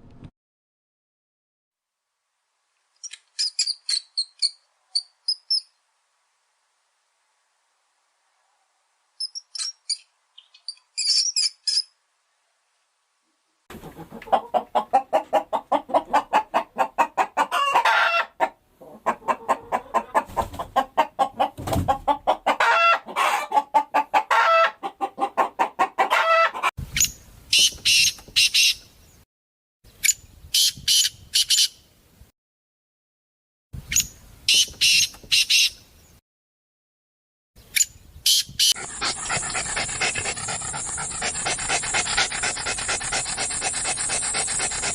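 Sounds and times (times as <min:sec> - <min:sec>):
chickens clucking: 0:13.7 - 0:26.7.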